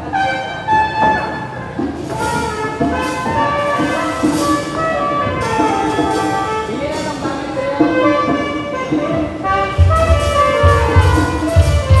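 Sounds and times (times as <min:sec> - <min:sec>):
live band playing: 0:00.0 - 0:12.0
cymbal crashes: 0:09.4 - 0:12.0.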